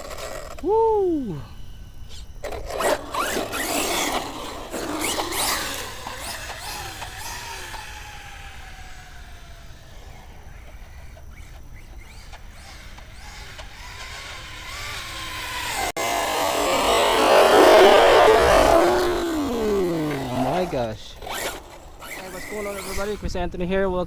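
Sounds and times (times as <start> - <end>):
toy truck motor whine: 0.0 - 23.3
tyre noise: 15.7 - 23.2.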